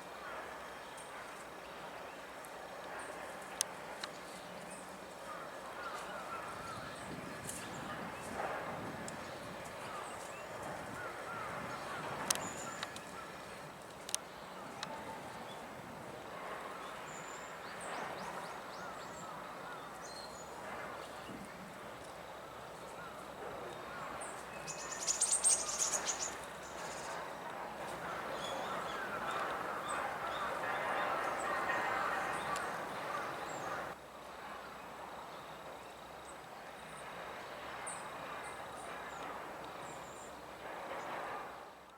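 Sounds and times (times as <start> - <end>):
steady background hum: 0.0 - 41.9
sharp clicking bird calls: 12.2 - 15.0
faint high bird calls: 23.0 - 27.2.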